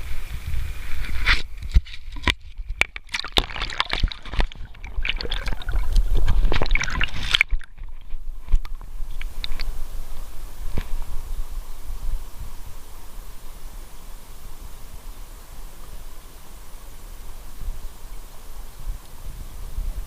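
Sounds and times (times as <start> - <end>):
crackling clicks: 1.0 - 9.7
water sloshing and splashing: 1.7 - 8.8.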